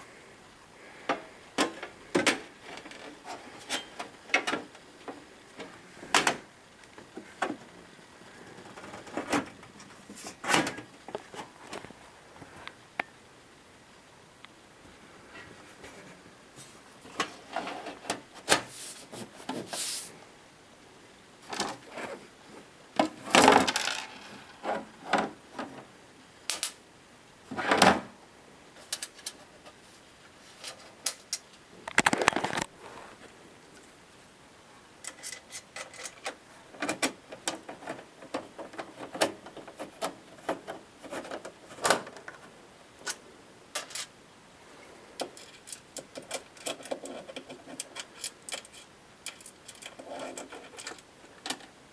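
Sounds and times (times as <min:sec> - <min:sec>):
tools and hardware clattering: 0:43.8 - 0:44.1.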